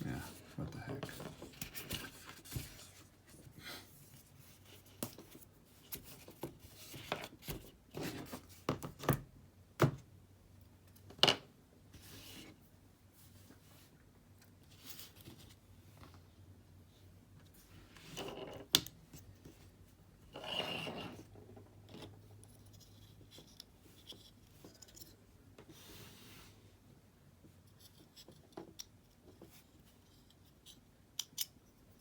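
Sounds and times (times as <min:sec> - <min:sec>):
small parts clicking and tapping: 0:30.2 - 0:32.0.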